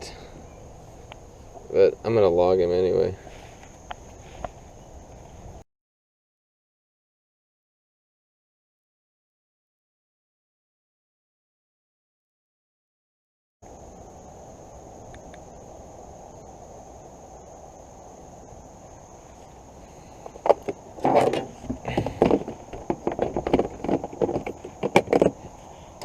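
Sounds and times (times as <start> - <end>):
high insect drone: 0.0 - 5.6, 13.6 - 26.0
knocks and clattering handling: 20.3 - 25.5.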